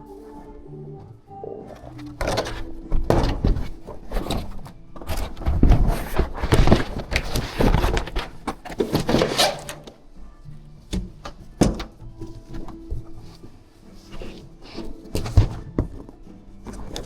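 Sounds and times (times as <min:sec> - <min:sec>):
background music: 0:00.0 - 0:17.0
tools clattering on workbench: 0:01.9 - 0:10.0.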